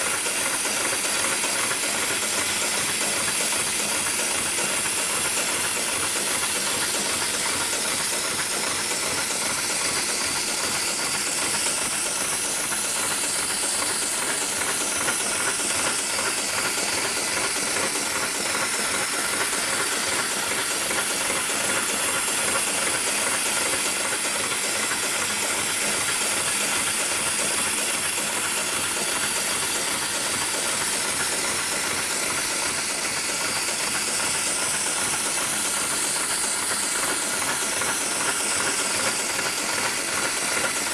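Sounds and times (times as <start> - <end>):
sewing machine running: 0.0 - 40.9.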